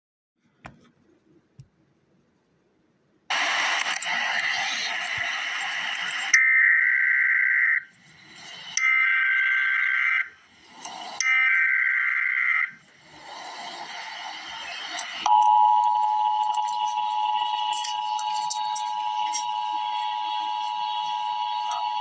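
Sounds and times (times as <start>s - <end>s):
two-tone attention signal: 15.3s - 22.0s
digital data tone bursts: 16.1s - 22.0s.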